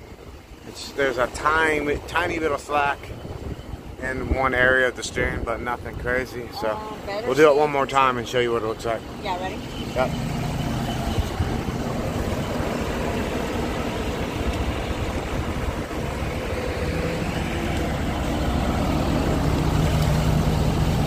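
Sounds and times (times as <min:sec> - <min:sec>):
diesel engine idling: 0:00.1 - 0:21.0.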